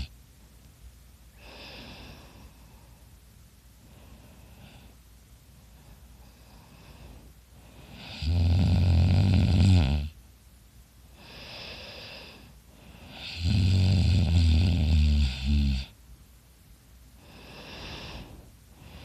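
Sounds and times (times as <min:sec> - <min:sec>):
soft breathy breath: 0:01.3 - 0:08.2, 0:11.0 - 0:13.3, 0:17.1 - 0:19.0
person snoring loudly: 0:07.9 - 0:10.2, 0:13.1 - 0:15.9.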